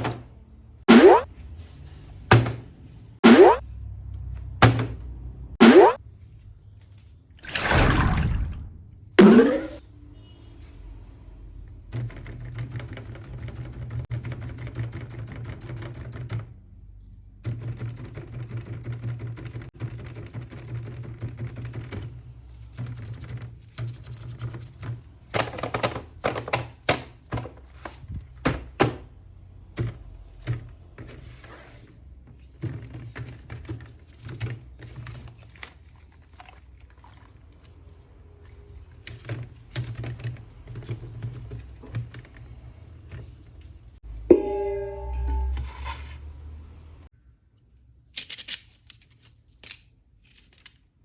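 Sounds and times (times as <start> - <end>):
plastic toys clicking and knocking: 23.8 - 27.6
low steady hum: 44.1 - 46.3.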